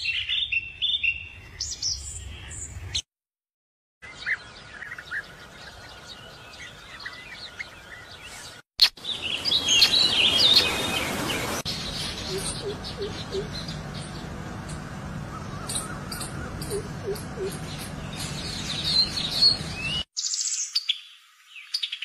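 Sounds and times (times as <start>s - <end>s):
small birds chirping: 4.0s - 22.0s.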